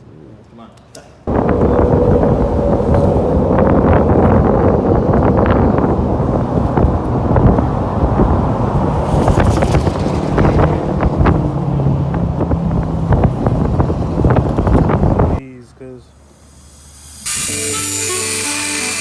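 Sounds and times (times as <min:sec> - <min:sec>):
loud rumbling noise: 0:01.3 - 0:15.4
wind buffeting microphone: 0:01.3 - 0:15.4.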